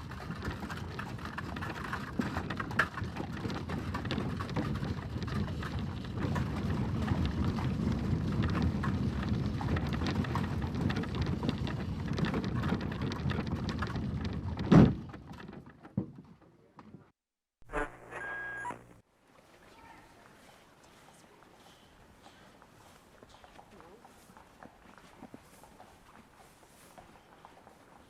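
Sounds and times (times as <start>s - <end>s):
carriage wheels clattering: 0.0s - 15.6s.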